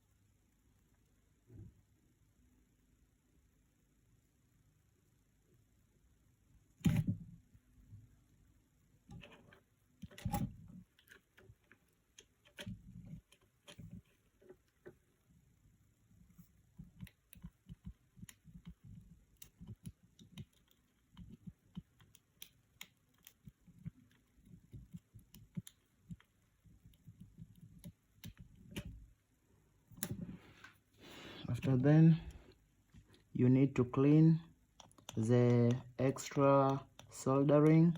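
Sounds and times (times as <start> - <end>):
small tools clicking and tapping: 16.8 - 29.0, 34.7 - 37.9.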